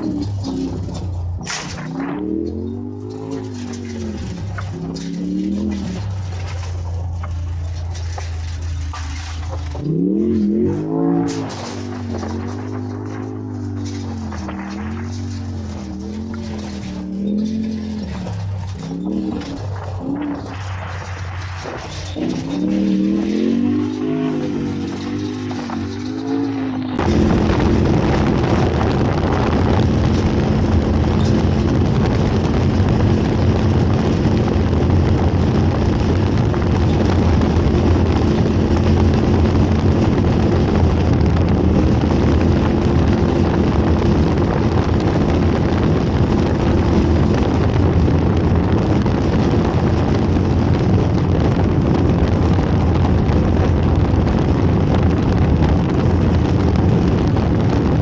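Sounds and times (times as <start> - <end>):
race vehicle engine running hard: 0.0 - 58.0
wind and road noise: 0.0 - 58.0.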